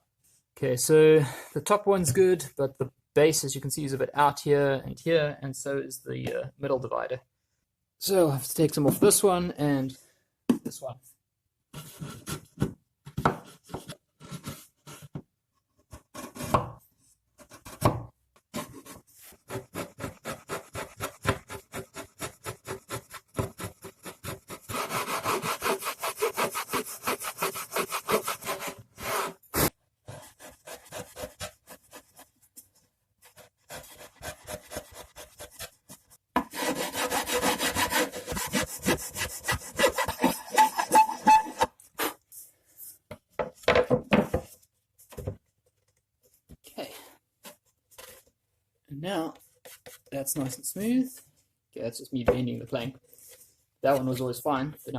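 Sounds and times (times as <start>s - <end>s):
hand file rasping wood: 18.6s - 32.3s, 33.3s - 42.2s.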